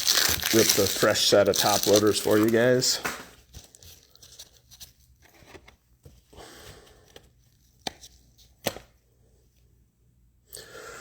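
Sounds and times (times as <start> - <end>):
plastic packaging crinkling and tearing: 0.0 - 5.1.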